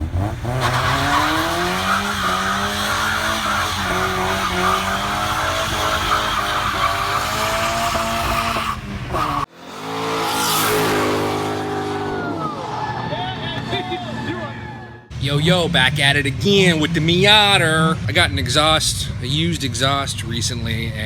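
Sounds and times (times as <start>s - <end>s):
car engine revving hard: 0.0s - 13.7s
tyre squeal: 0.5s - 9.5s.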